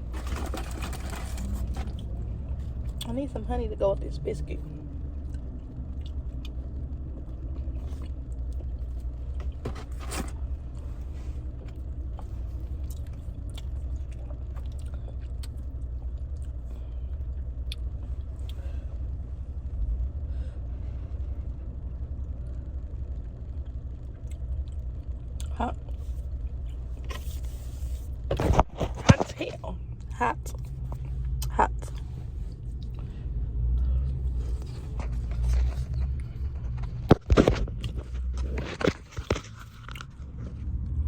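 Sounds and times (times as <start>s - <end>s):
steady low rumble: 0.0s - 39.1s
chewing crispy fried chicken: 11.5s - 18.7s.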